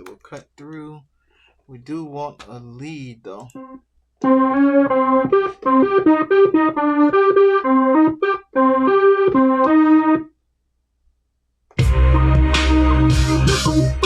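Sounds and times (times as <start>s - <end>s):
electric piano melody: 3.5s - 10.3s
beat with heavy bass and drums: 11.8s - 14.0s.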